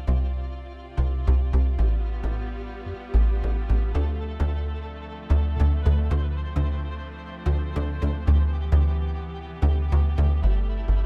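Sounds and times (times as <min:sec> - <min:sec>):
bowed strings: 0:00.0 - 0:11.0
deep bass: 0:00.0 - 0:11.0.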